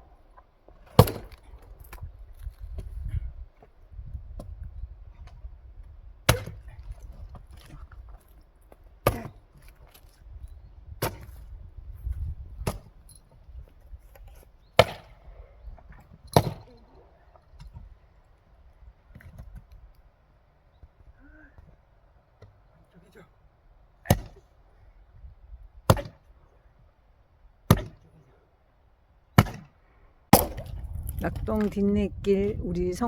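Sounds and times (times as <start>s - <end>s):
axe splitting firewood: 0.7s - 2.9s, 6.3s - 10.2s, 11.0s - 11.5s, 12.1s - 13.0s, 14.0s - 15.2s, 15.8s - 16.8s, 24.1s - 24.4s, 25.8s - 26.3s, 27.7s - 28.2s, 29.3s - 31.7s.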